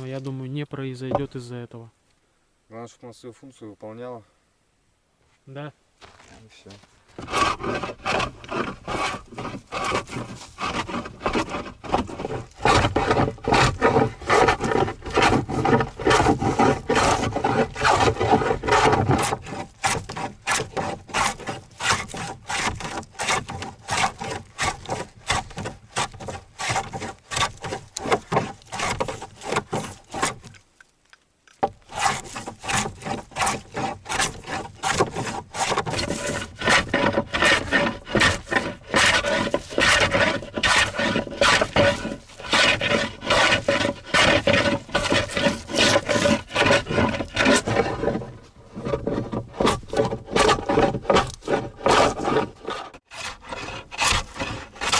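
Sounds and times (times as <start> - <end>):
hand tool rasping wood: 6.8 - 30.6, 31.6 - 54.9.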